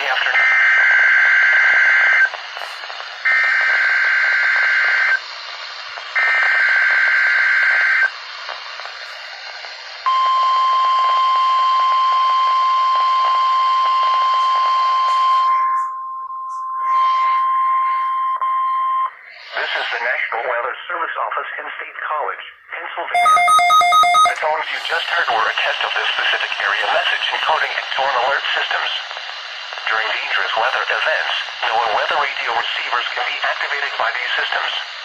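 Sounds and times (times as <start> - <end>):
faint radio hiss: 0.0 - 15.9, 19.1 - 35.0
steady warning alarm tone: 10.1 - 19.2, 23.2 - 27.6.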